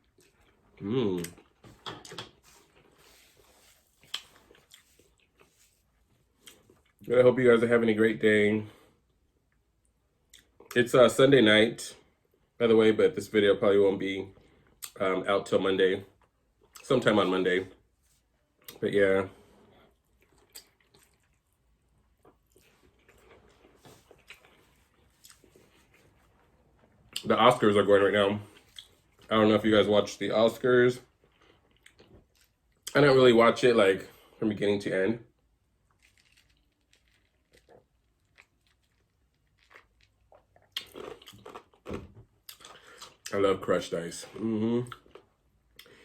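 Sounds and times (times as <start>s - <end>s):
faint chewing: 0.0s - 7.1s, 19.6s - 27.3s, 28.4s - 29.3s, 35.8s - 43.4s.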